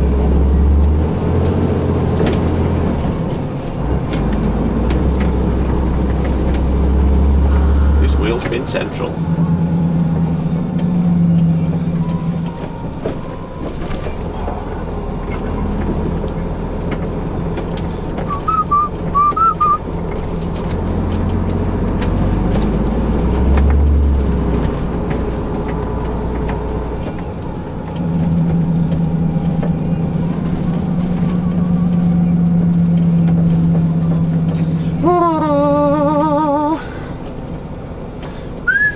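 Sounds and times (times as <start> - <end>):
lorry diesel engine running: 0.0 - 38.9.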